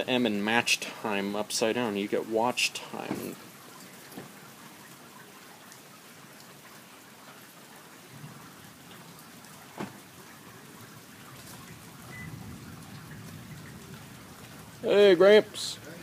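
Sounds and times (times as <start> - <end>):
steady rain falling: 0.0 - 16.0
water drips: 0.0 - 16.0.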